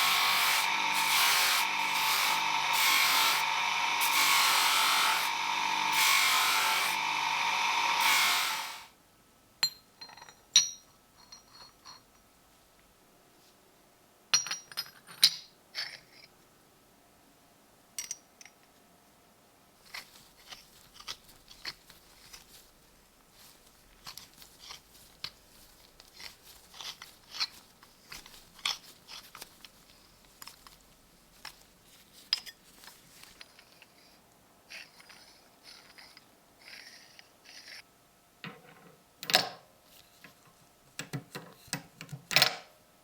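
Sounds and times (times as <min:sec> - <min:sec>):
light clicks and scrapes: 0:19.8 - 0:37.9.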